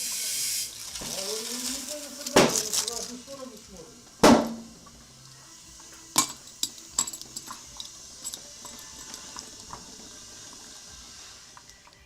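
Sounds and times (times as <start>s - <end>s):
sharp metallic clinks: 6.2s - 9.4s.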